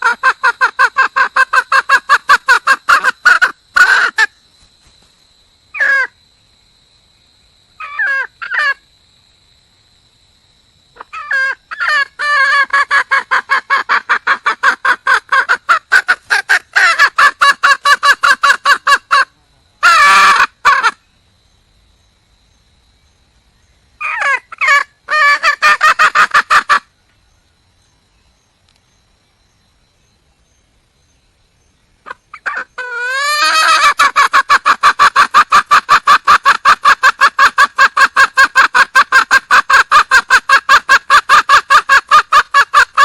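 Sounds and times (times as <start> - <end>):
hen clucking: 0.0 - 4.3, 11.0 - 21.0, 24.0 - 26.8, 32.0 - 43.0.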